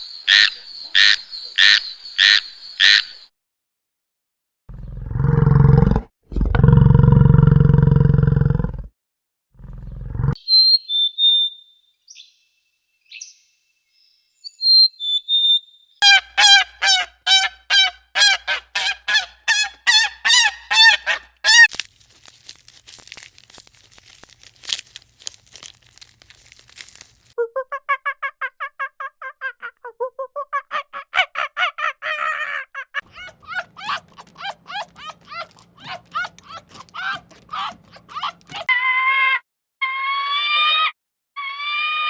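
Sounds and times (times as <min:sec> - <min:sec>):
deep animal roar: 0:04.7 - 0:08.9
high whistled bird notes: 0:14.4 - 0:21.7
goose honking: 0:16.0 - 0:21.7, 0:33.1 - 0:38.7.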